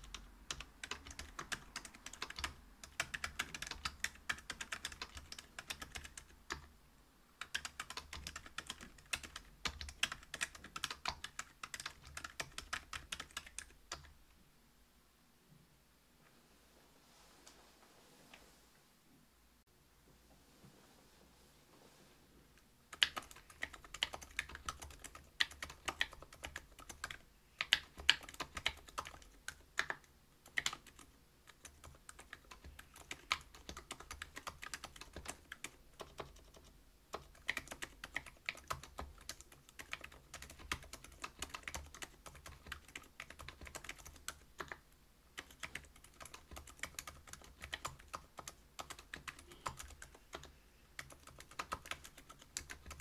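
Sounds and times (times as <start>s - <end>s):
mechanical keyboard typing: 0.0s - 6.7s, 7.4s - 14.1s, 22.9s - 44.8s, 45.4s - 53.0s.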